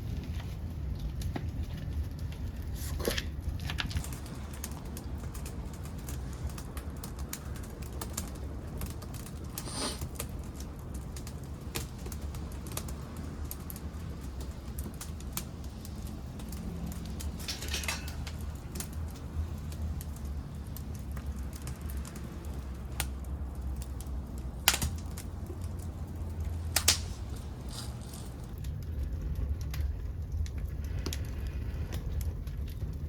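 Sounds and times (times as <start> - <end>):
low steady rumble: 0.0 - 33.0
wood fire crackling: 0.0 - 33.0
short hissing burst: 9.6 - 10.0.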